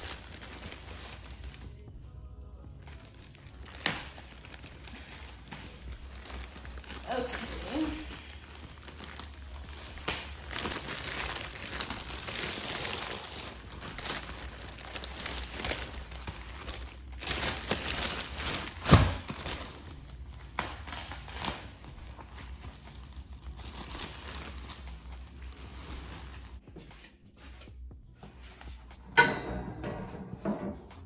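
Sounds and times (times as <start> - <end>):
plastic wrapping crinkling: 0.0 - 1.8, 2.8 - 26.6.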